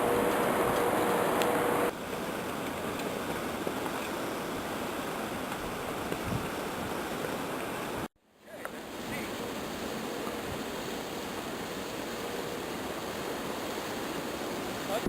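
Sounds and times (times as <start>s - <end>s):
blizzard wind rushing: 0.0s - 1.9s
loud humming noise: 0.0s - 1.9s.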